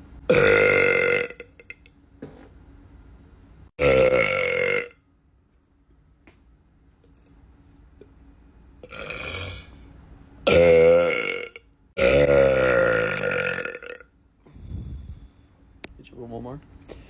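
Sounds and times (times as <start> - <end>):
man burping loudly: 0.3 - 1.8, 3.8 - 5.0, 8.8 - 9.7, 10.4 - 14.0
faint breathy sound: 14.4 - 15.6.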